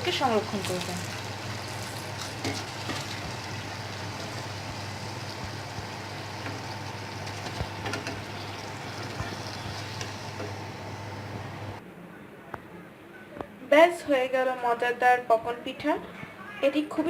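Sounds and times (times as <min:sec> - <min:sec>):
food sizzling in hot oil: 0:00.0 - 0:11.8.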